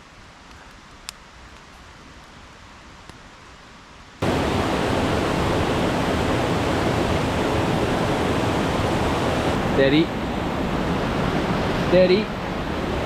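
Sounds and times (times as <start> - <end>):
loud rushing water: 4.2 - 13.0.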